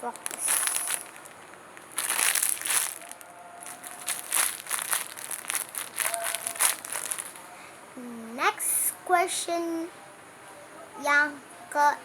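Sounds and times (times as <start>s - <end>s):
squishy toy crinkling: 0.0s - 7.5s.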